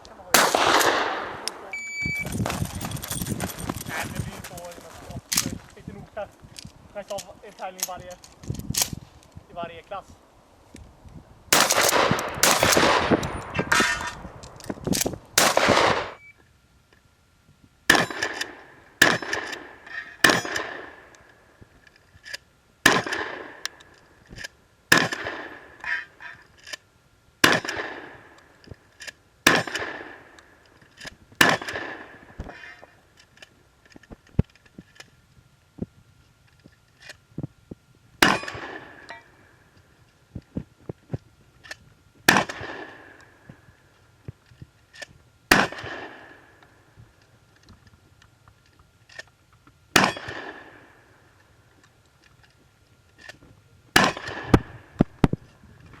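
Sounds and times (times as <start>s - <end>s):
shotgun firing: 0.3s - 1.7s, 11.5s - 14.2s, 15.0s - 16.2s, 24.9s - 25.6s, 27.4s - 28.2s, 29.4s - 30.3s, 31.4s - 32.3s, 38.2s - 39.1s, 42.3s - 43.2s, 45.5s - 46.4s, 50.0s - 50.8s, 54.0s - 54.8s
metallic clangs of hits: 38.2s - 39.4s.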